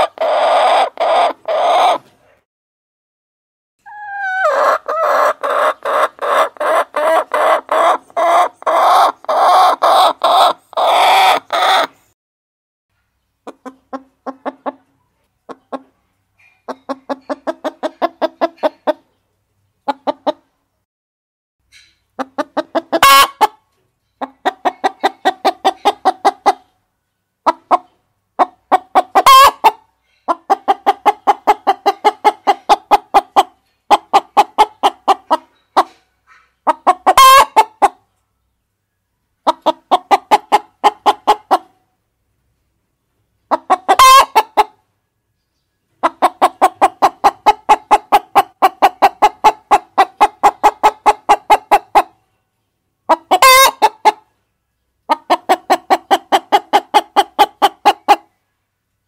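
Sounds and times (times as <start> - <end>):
hens clucking: 0.0 - 2.2, 3.9 - 12.0, 13.4 - 19.2, 19.8 - 20.6, 22.2 - 26.8, 27.4 - 38.2, 39.4 - 41.8, 43.4 - 44.8, 46.0 - 52.2, 53.0 - 54.3, 55.0 - 58.4.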